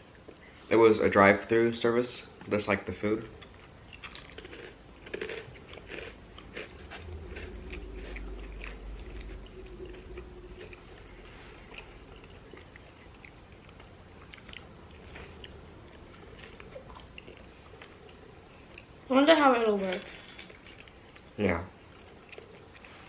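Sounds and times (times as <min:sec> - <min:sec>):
people chewing and biting food: 0:03.1 - 0:19.0, 0:20.0 - 0:23.0
low rumble: 0:03.2 - 0:21.2.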